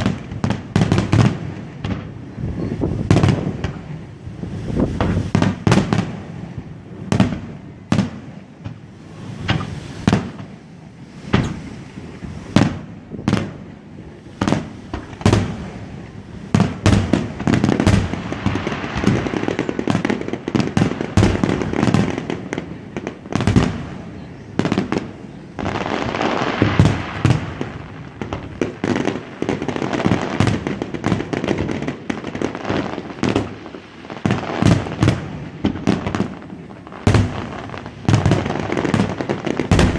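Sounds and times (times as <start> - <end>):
crackling fireworks bangs: 0.0 - 39.9
fireworks shell bursts booming: 4.7 - 6.1, 7.1 - 10.6, 11.2 - 13.6, 37.0 - 39.9.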